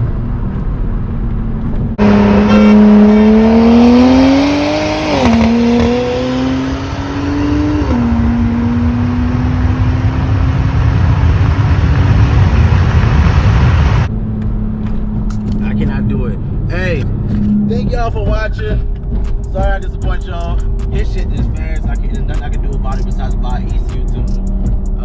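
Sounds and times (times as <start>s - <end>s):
wind and road noise: 0.0s - 23.3s
car engine revving hard: 2.0s - 14.1s.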